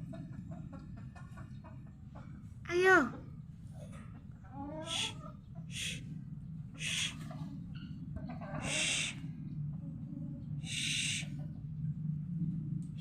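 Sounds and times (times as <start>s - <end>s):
steady low hum: 0.0s - 13.0s
breathy hissing bursts: 5.8s - 6.0s, 6.8s - 7.1s, 10.7s - 11.3s.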